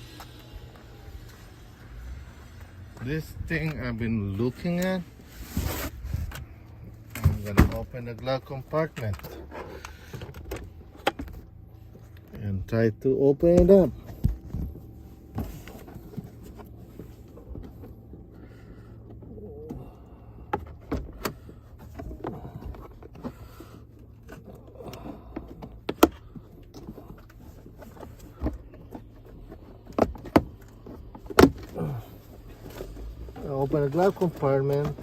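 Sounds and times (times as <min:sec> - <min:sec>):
low hum: 0:00.0 - 0:33.5
glove compartment plastic clicks: 0:20.5 - 0:33.2.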